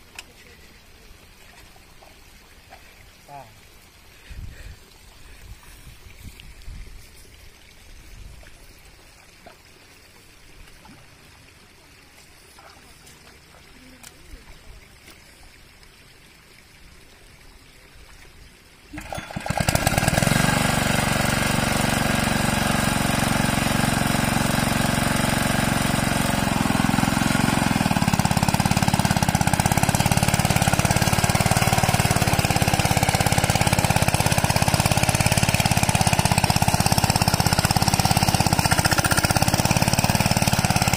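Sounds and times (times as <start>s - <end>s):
tractor engine starting and running: 18.9s - 40.9s.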